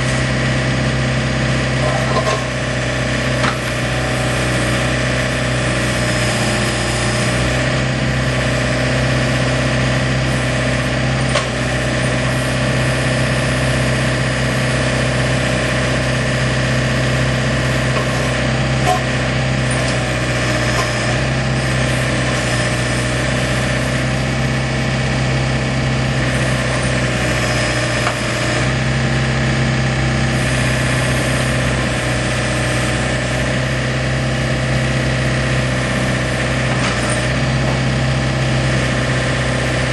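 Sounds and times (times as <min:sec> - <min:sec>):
diesel engine running steadily: 0:00.0 - 0:39.9.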